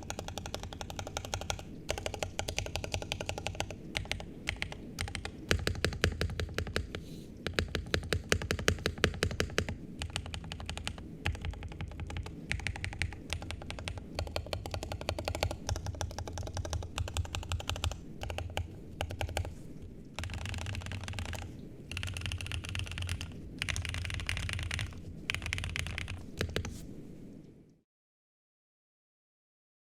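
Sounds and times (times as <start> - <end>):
mechanical keyboard typing: 0.0 - 19.6, 20.2 - 26.8.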